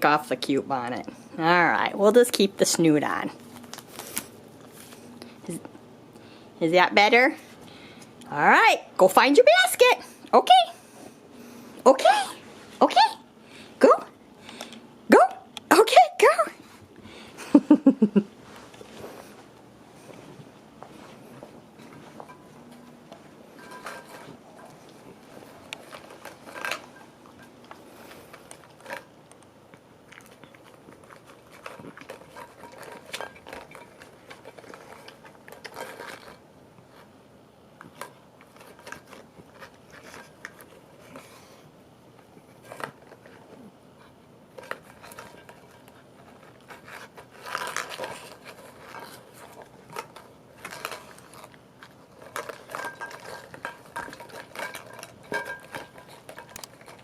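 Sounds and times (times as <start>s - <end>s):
dog rummaging in plastic toys: 44.6s - 57.0s.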